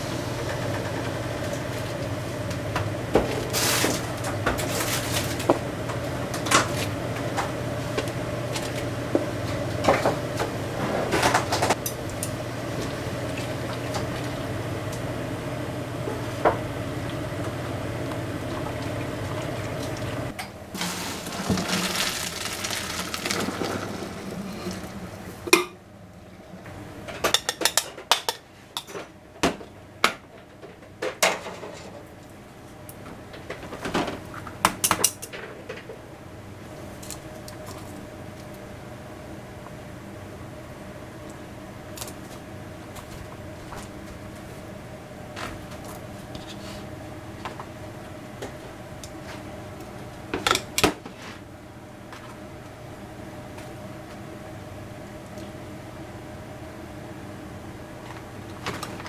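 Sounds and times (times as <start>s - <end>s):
steady hum: 0.0s - 27.0s.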